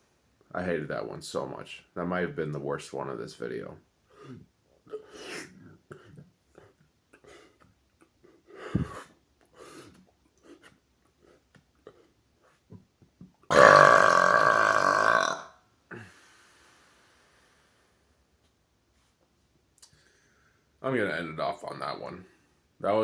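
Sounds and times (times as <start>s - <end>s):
man burping loudly: 13.5s - 15.5s.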